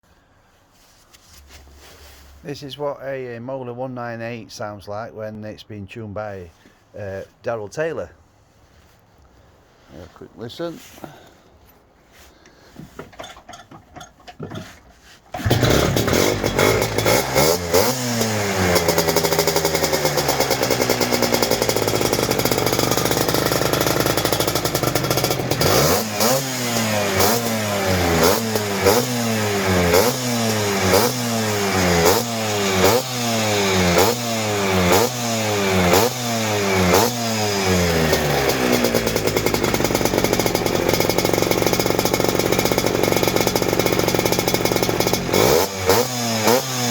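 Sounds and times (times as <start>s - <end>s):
scooter engine revving and idling: 14.4s - 46.9s.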